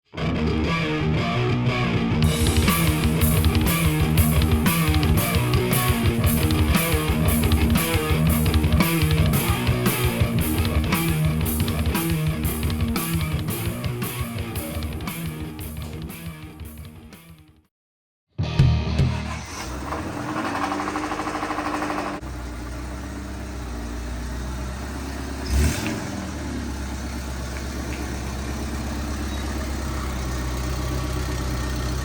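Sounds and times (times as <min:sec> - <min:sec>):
guitar-driven rock music: 0:00.1 - 0:17.7, 0:18.4 - 0:19.6.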